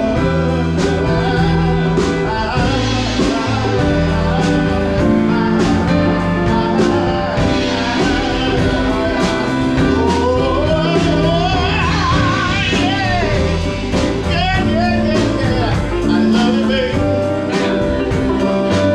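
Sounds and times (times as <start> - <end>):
drums steady beat: 0.0 - 18.9
live band playing: 0.0 - 18.9
person singing: 0.0 - 18.9.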